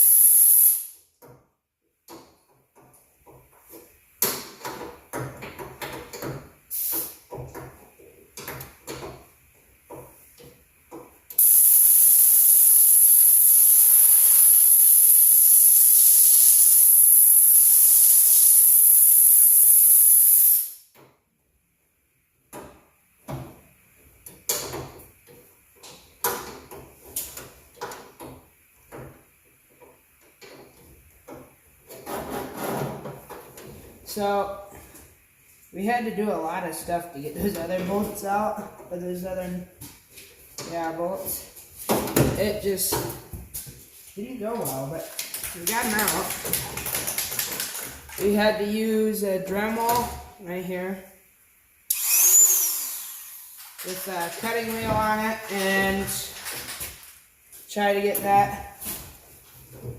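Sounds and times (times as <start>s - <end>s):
compressed air hissing from hose: 0.0s - 1.0s, 6.7s - 7.2s, 11.4s - 20.8s.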